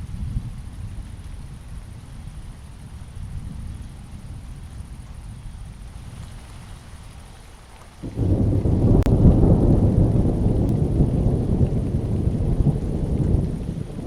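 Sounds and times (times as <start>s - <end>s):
steady rain: 0.0s - 14.0s
thunder rumbling: 8.0s - 14.0s.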